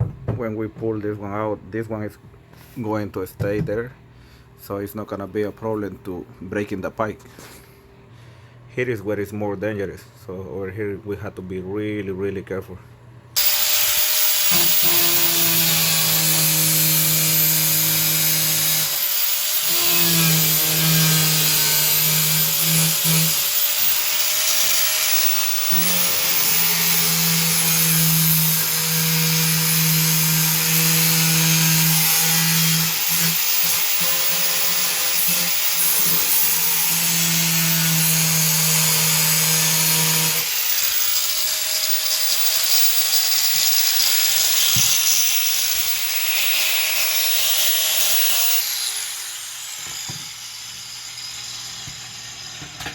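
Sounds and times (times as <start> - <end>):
saw rasping through fiberglass: 13.4 - 52.4.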